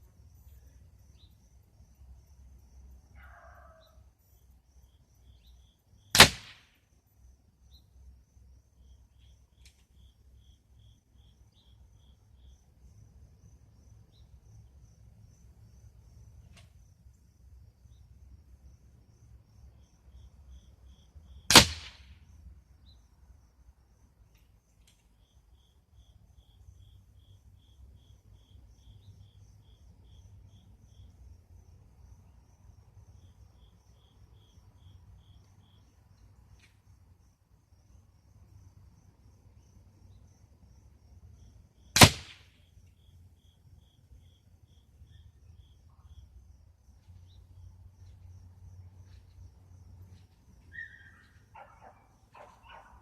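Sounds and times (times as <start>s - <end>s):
insects chirping: 0.0s - 53.0s
air rifle shots: 6.1s - 6.7s, 21.5s - 22.1s, 42.0s - 42.5s.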